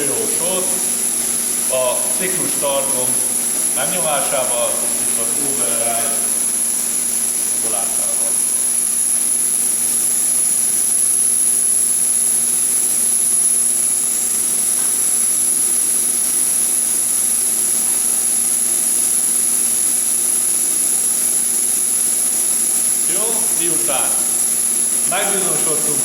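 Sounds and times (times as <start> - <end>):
milling machine running: 0.0 - 26.0.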